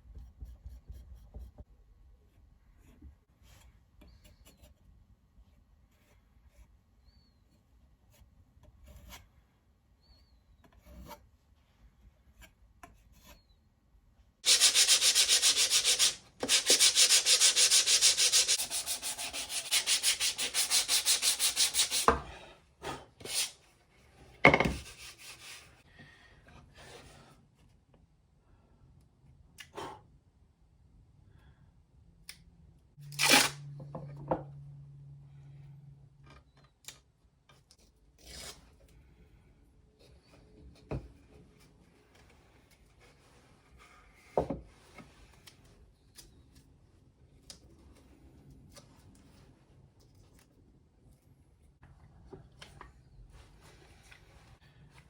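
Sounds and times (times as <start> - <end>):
sandpaper rubbing on wood: 14.4 - 22.1.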